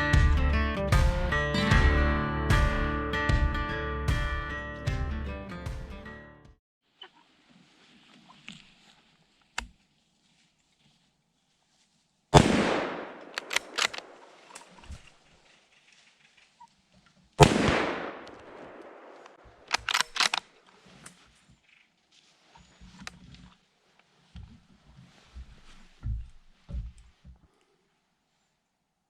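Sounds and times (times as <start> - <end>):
rifle shots with echo: 12.4 - 14.5, 17.4 - 20.2
sharp rifle clicks: 12.4 - 14.8, 17.4 - 20.5.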